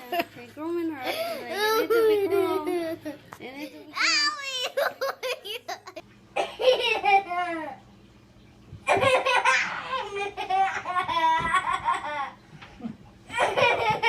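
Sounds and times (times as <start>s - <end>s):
baby laughing: 8.9s - 12.4s, 13.3s - 14.0s.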